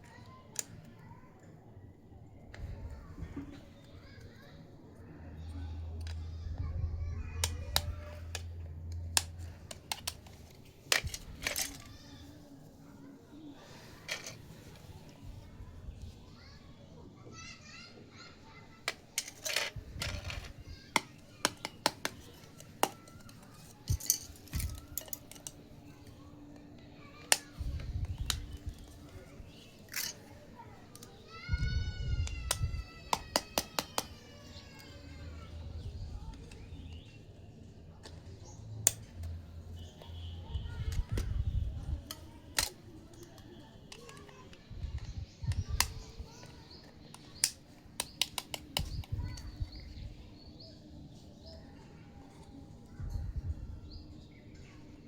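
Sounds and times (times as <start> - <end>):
rustling handling noise: 5.8 - 16.3, 18.7 - 31.4
plastic toy pieces clicking: 7.4 - 12.1, 18.8 - 25.6, 29.9 - 31.2, 32.2 - 34.2, 42.0 - 46.0, 46.9 - 49.5.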